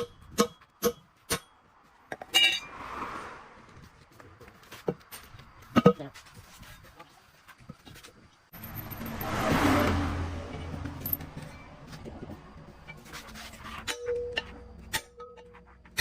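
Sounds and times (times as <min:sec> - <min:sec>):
metal tools clinking and knocking: 0:08.5 - 0:09.4, 0:10.5 - 0:12.0.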